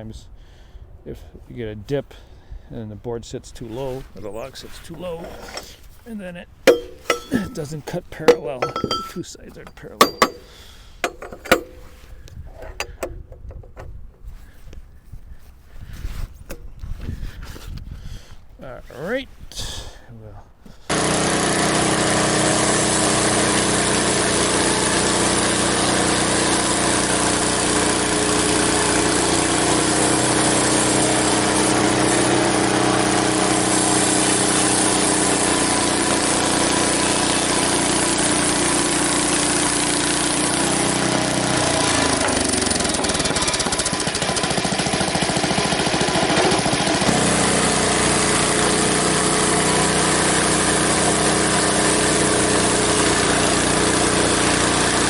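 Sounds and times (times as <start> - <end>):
band sawmill running: 4.7 - 6.1, 6.7 - 12.0, 20.9 - 55.0.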